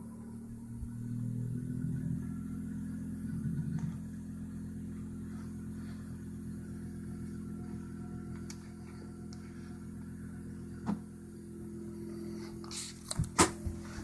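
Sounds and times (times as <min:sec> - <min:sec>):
air conditioner humming: 0:00.0 - 0:14.0.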